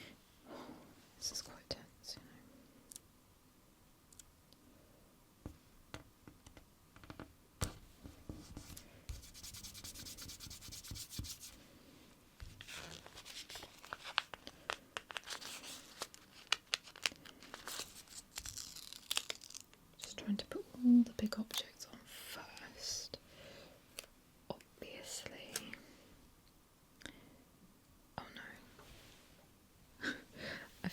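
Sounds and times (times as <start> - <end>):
fingers rubbing paper: 8.5 - 11.6
sticky clicks and crackles: 16.0 - 19.8.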